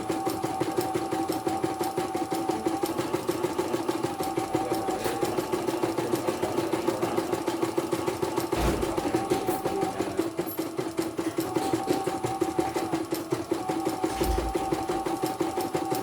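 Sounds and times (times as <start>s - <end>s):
embroidery machine stitching: 0.0s - 16.0s
low thump: 8.6s - 9.3s.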